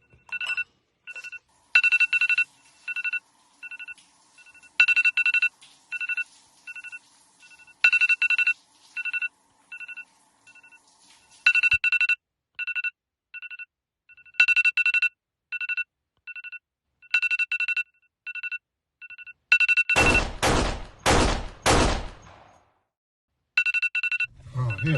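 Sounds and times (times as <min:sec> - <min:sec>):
phone alarm beeping: 0:00.0 - 0:10.8, 0:11.4 - 0:20.4, 0:23.6 - 0:24.9
loud bangs: 0:20.0 - 0:22.6.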